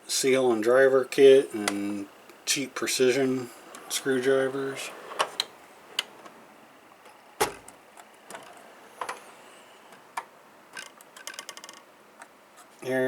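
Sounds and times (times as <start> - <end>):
drawer thump: 7.4 - 7.7
tool chest drawer clicks and knocks: 7.4 - 9.3.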